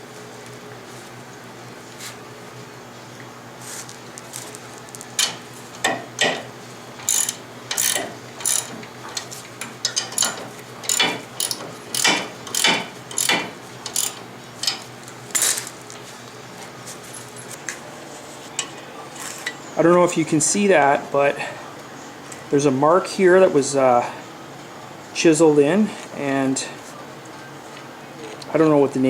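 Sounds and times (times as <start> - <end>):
metallic clicks and clanks: 7.0 - 14.8.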